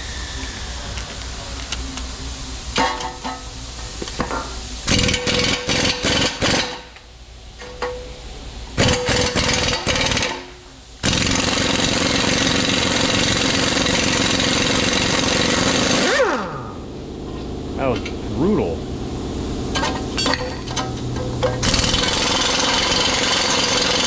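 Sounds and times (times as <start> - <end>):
impact wrench hammering: 4.9 - 6.9, 8.8 - 16.5, 19.8 - 24.0.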